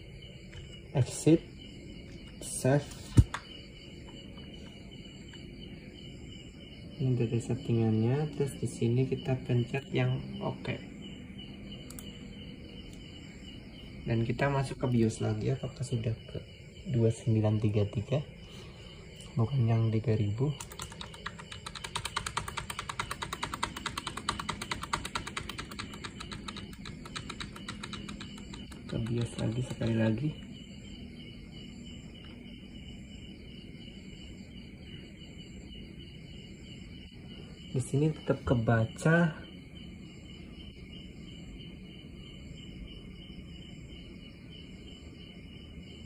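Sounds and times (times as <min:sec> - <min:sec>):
faint high continuous tone: 0:00.0 - 0:46.0
low background hum and hiss: 0:00.0 - 0:46.0
keyboard key tapping rapidly: 0:20.5 - 0:30.4.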